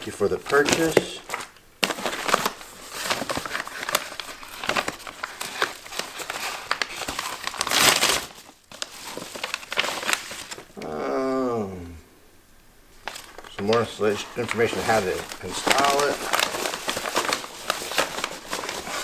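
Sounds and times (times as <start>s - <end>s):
paper crinkling and rustling: 0.0s - 10.8s, 13.0s - 19.0s
man humming: 10.8s - 12.2s.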